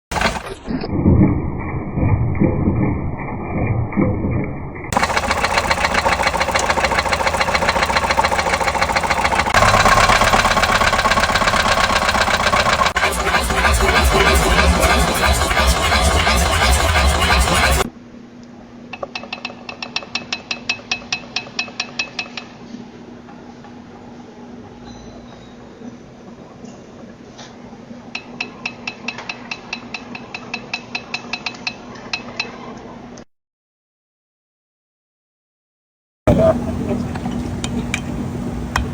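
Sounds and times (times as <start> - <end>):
car engine knocking: 0.1 - 0.4, 5.0 - 17.9.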